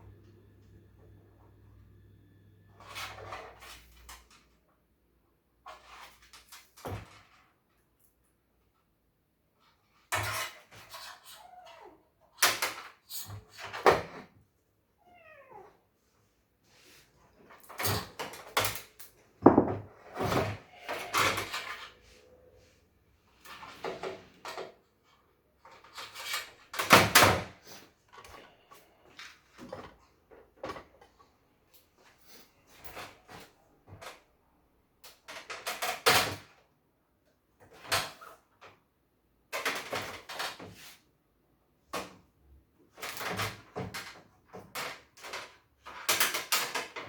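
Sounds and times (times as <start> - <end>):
hard parts knocking and clattering: 19.4 - 21.9.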